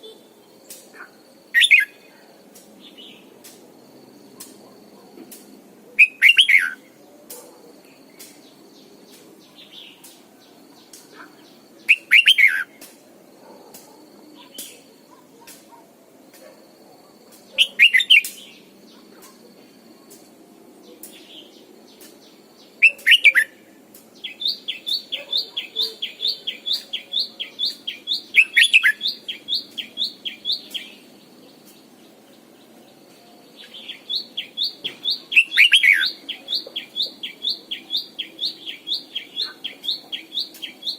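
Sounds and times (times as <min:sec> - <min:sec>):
rapid bird chirps: 0:00.1 - 0:02.0, 0:08.1 - 0:13.0, 0:17.3 - 0:19.5, 0:20.9 - 0:23.6, 0:24.2 - 0:32.8, 0:33.6 - 0:40.9.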